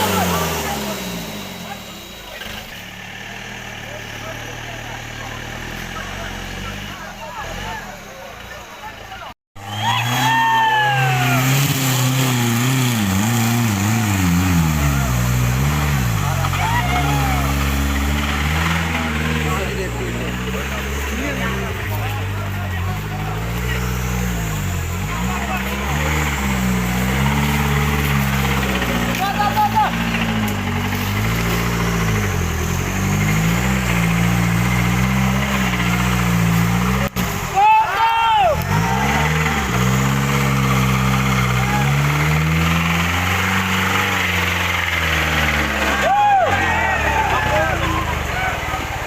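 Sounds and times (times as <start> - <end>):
vehicle engine revving: 0.0 - 49.0.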